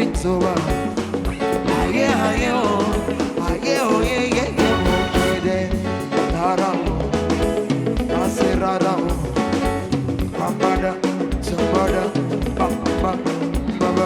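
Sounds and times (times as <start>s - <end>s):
drums and bass beat: 0.0s - 14.0s
live band playing: 0.0s - 14.0s
melodic lead line: 4.6s - 6.5s.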